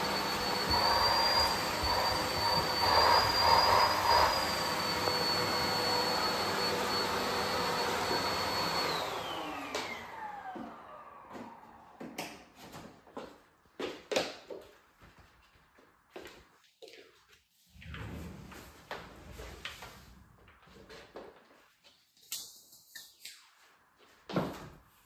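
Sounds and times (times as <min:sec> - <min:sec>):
vacuum cleaner whining: 0:00.0 - 0:12.7.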